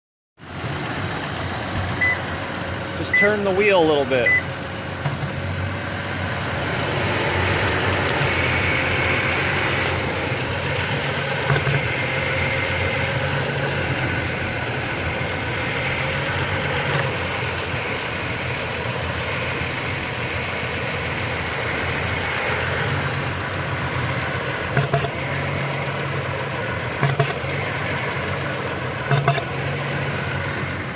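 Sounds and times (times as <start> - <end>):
truck engine idling: 0.4 - 30.9
sharp pops when steering: 5.0 - 5.4, 27.0 - 27.5, 29.1 - 29.6.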